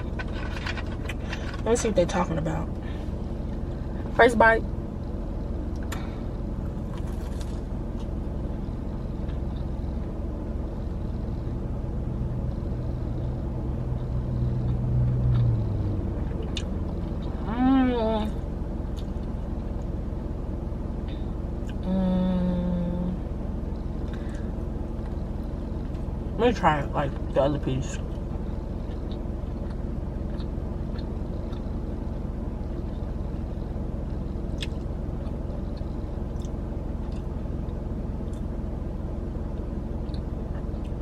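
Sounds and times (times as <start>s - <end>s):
idling car rumble: 0.0s - 41.0s
low hum: 0.0s - 41.0s
woman humming while eating: 21.7s - 23.2s.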